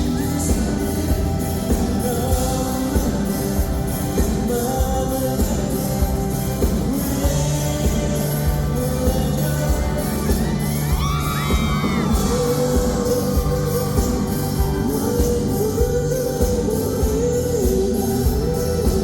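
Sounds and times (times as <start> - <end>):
live pop-rock band: 0.0 - 19.0
man singing: 0.0 - 19.0
audience screaming: 9.8 - 15.8.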